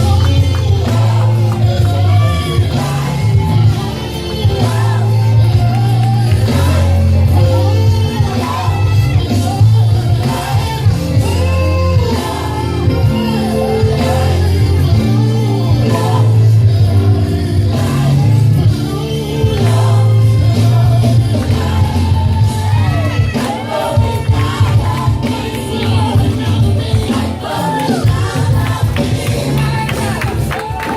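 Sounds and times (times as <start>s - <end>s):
bass and drums: 0.0s - 30.9s
singers with band: 0.0s - 30.9s.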